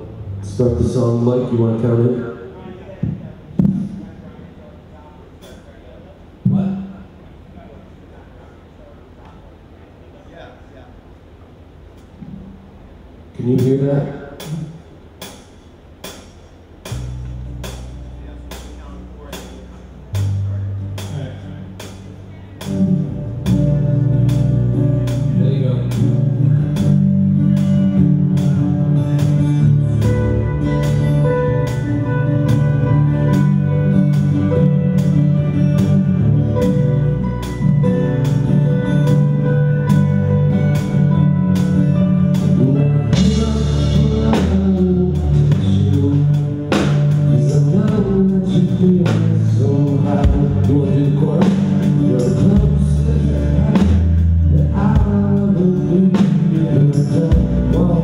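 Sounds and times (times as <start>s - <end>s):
live rock band playing: 13.5s - 58.0s
person singing: 42.4s - 58.0s.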